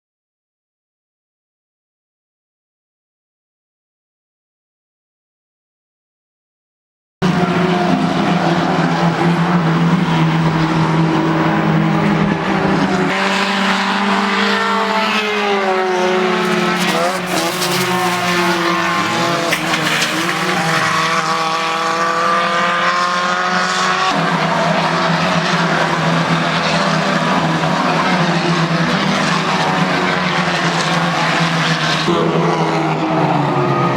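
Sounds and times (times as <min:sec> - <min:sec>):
race car engines: 0:07.2 - 0:33.9.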